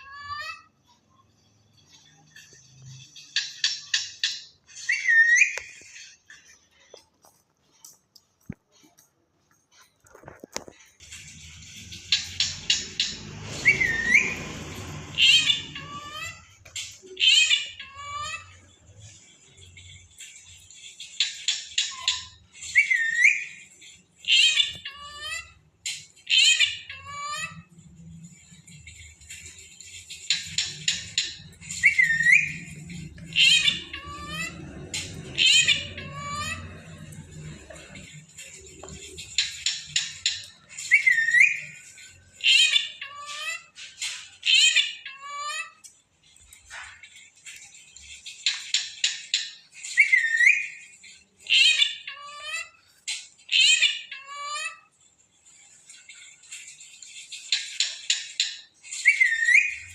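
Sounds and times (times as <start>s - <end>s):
parrot calling: 0.0s - 0.7s, 3.4s - 6.3s, 11.5s - 18.7s, 21.2s - 27.8s, 30.2s - 45.9s, 48.5s - 55.0s, 57.4s - 59.9s.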